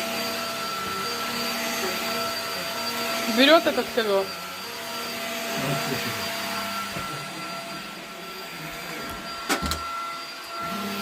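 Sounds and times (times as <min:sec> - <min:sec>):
vacuum cleaner running on a rug: 0:00.0 - 0:11.0.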